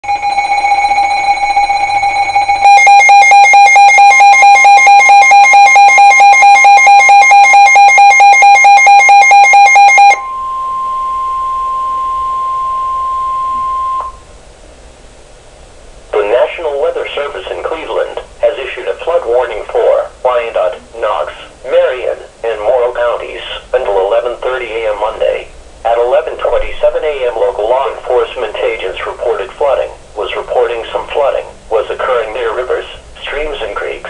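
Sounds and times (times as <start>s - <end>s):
electronic alarm beeping: 0.0s - 14.2s
steady warning tone: 0.0s - 14.4s.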